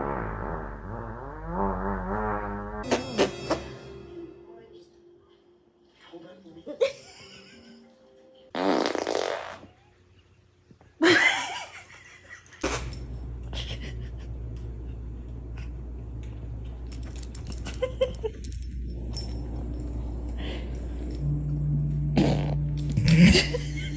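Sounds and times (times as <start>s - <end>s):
steady low hum: 12.6s - 23.9s
dog tags jingling: 16.9s - 20.0s.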